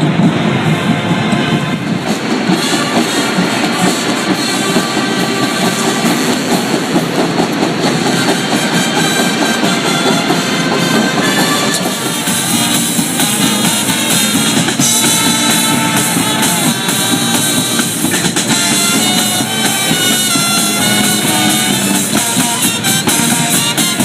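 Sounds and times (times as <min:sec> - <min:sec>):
drum kit playing: 0:00.0 - 0:24.0
loud band music: 0:00.0 - 0:24.0.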